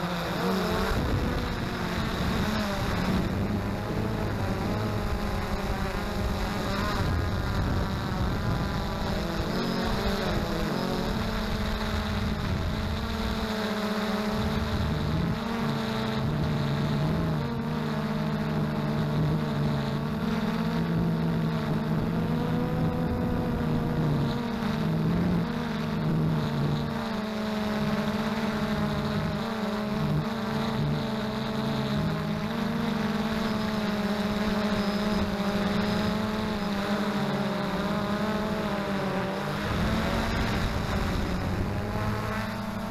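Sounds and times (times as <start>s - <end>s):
quadcopter propellers humming: 0.0s - 42.9s
wind buffeting microphone: 0.8s - 13.5s, 38.2s - 42.9s.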